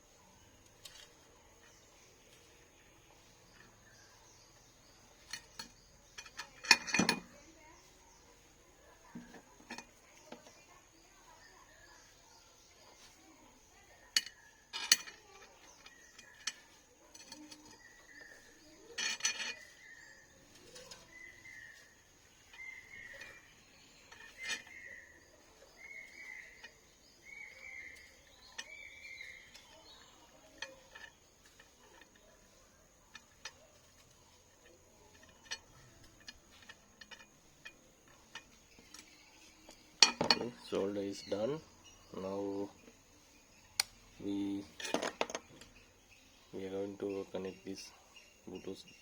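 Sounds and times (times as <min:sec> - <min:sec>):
bird chirping: 0:00.0 - 0:49.0
soldering clicks and taps: 0:43.6 - 0:44.1.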